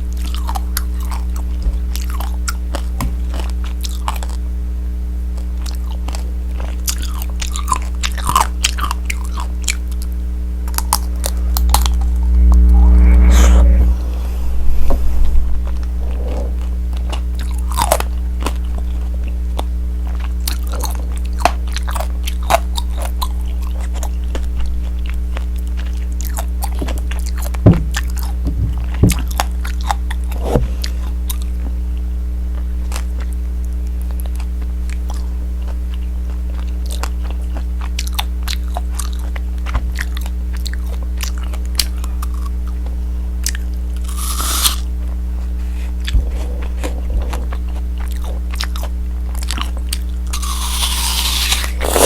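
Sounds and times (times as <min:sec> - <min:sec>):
steady low hum: 0:00.0 - 0:52.0
crunching candy shell chewing: 0:00.1 - 0:04.4, 0:05.3 - 0:12.0, 0:34.0 - 0:44.9, 0:46.0 - 0:52.0.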